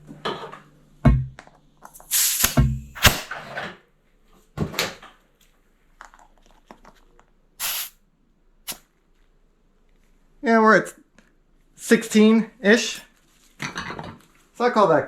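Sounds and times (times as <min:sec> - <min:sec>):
compressed air hissing: 0:01.9 - 0:03.3, 0:07.6 - 0:08.0.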